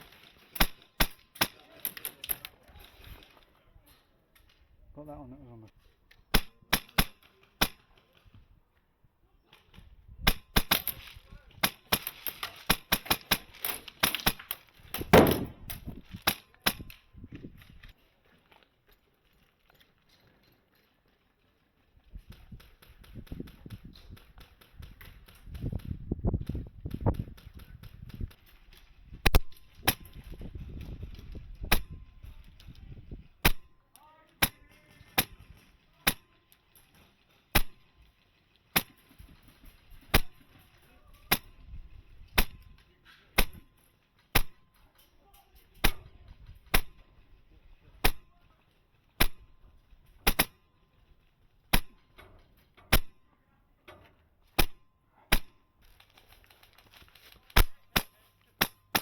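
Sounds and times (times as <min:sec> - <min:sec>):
airsoft rifle firing single shots: 0:06.3 - 0:07.8, 0:10.3 - 0:17.0, 0:33.4 - 0:33.8, 0:37.5 - 0:37.8, 0:40.1 - 0:40.4, 0:43.4 - 0:43.7, 0:44.3 - 0:44.6, 0:48.0 - 0:48.3, 0:49.2 - 0:49.5, 0:50.2 - 0:50.6, 0:52.9 - 0:53.2, 0:54.6 - 0:55.6, 0:57.6 - 0:59.0.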